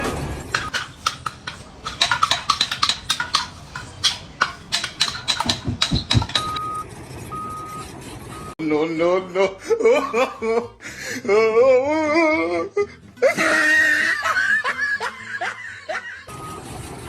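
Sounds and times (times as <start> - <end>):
sharp metallic knocks: 0.5 - 6.6.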